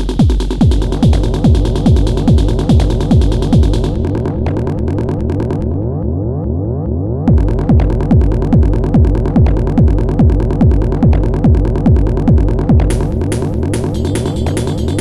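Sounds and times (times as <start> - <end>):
hi-hats: 0.0 - 4.3, 12.6 - 15.0
kick drum: 0.0 - 4.5, 7.3 - 15.0
synth bass: 0.0 - 15.0.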